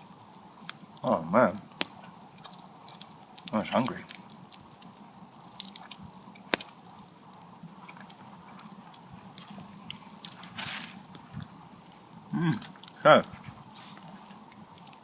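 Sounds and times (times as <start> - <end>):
person chewing steak: 1.7 - 3.5, 4.1 - 11.6, 12.6 - 15.0.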